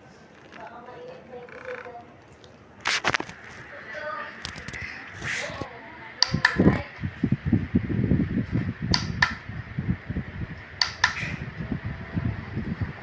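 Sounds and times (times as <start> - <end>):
fan airflow buffeting microphone: 0.0 - 13.0
sharp clicks: 4.4 - 6.8, 8.9 - 9.4, 10.8 - 11.4.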